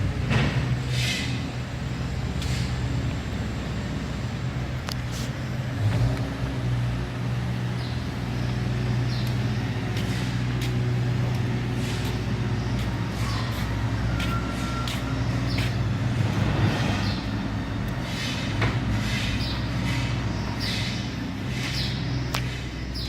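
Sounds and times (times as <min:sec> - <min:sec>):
heavy machinery engine running: 0:00.0 - 0:23.0.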